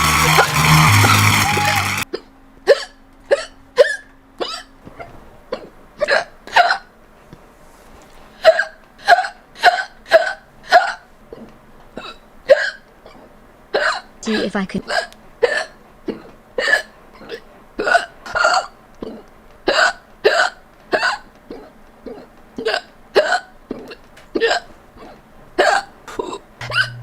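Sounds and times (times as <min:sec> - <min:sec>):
loud music: 0:00.0 - 0:02.0
person hiccuping: 0:02.1 - 0:04.7, 0:08.5 - 0:27.0.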